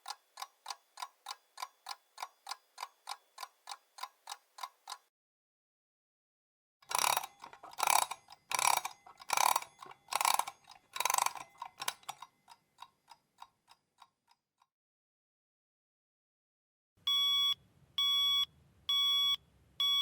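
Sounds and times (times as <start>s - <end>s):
alarm clock winding ratchet: 0.0s - 5.0s, 6.8s - 14.3s
clock ticking: 0.0s - 5.0s, 6.9s - 14.2s.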